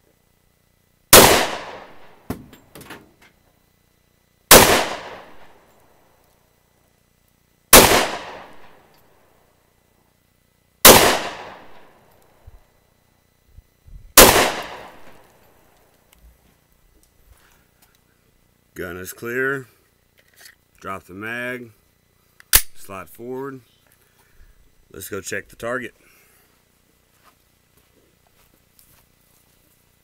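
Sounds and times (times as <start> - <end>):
pistol shots with ringing tail: 1.1 - 2.5, 4.5 - 5.6, 7.7 - 8.9, 10.8 - 12.0, 14.2 - 15.3.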